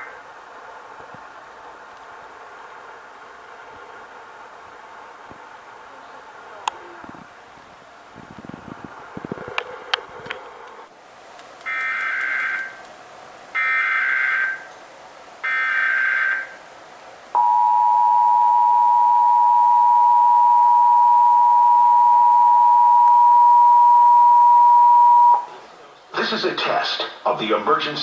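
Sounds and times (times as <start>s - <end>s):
steady two-tone alert signal: 17.4s - 25.5s.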